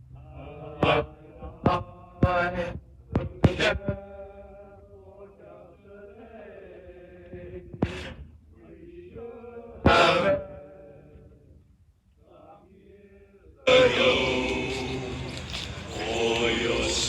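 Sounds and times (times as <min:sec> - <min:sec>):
male voice choir singing: 0:00.2 - 0:11.2, 0:12.2 - 0:17.0
crackling noise bursts: 0:13.7 - 0:17.0.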